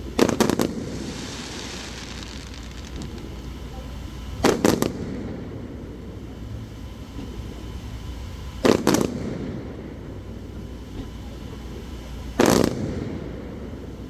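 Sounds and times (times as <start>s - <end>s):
firework shells bursting: 0.0s - 5.0s
echoing rumble: 0.2s - 4.6s.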